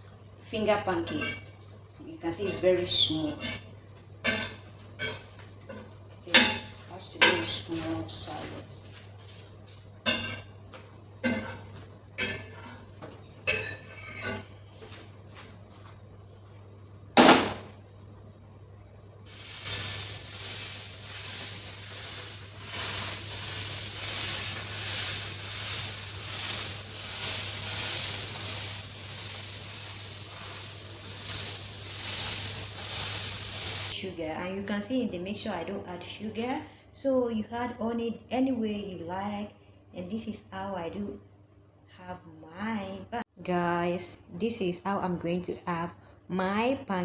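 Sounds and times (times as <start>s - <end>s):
low steady hum: 0.0s - 47.0s
pancakes sizzling in a pan: 19.3s - 34.0s.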